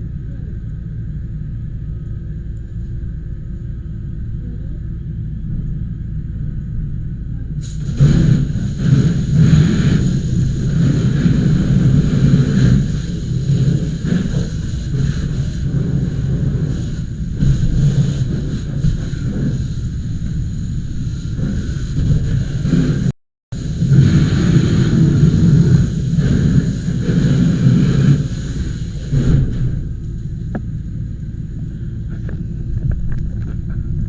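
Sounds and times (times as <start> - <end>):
low engine rumble: 0.0 - 34.0
loud uneven rushing noise: 7.6 - 34.0.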